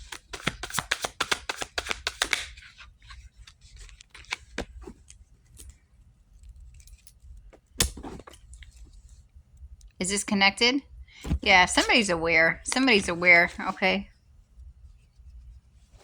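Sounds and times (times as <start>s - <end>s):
cards being shuffled: 0.0s - 5.2s, 11.2s - 14.0s.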